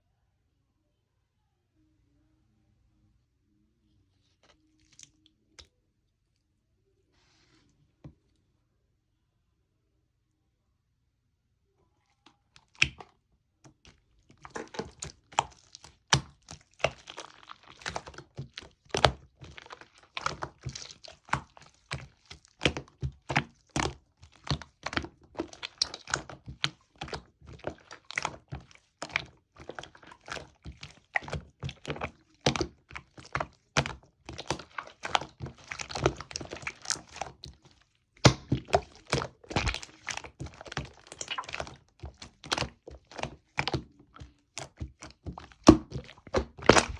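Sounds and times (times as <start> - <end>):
hands squishing slime: 4.3 - 5.7, 12.2 - 46.9.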